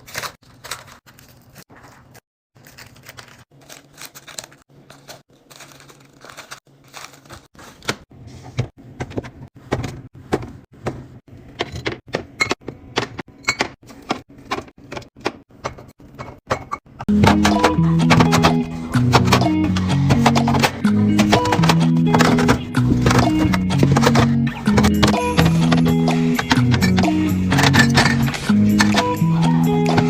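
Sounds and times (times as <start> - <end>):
containers knocking and clattering: 9.0 - 30.0
plucked string music: 17.1 - 30.0.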